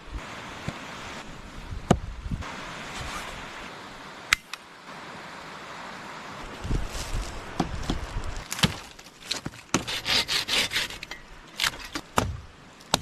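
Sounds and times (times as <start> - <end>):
wood knocking and cracking: 7.6 - 10.0
rasping sawing sound: 9.8 - 11.1.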